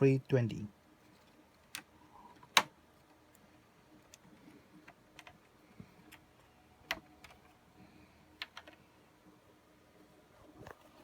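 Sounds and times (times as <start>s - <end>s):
faint clicks and taps: 1.0s - 7.6s.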